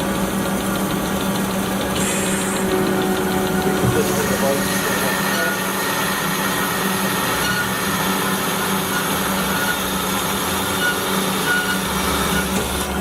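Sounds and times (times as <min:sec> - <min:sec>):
band saw running: 0:00.0 - 0:13.0.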